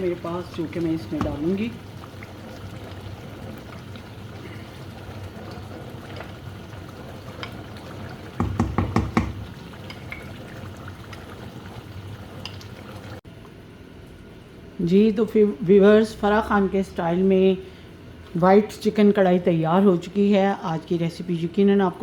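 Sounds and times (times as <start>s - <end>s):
spoon knocking against pan: 8.4s - 10.0s.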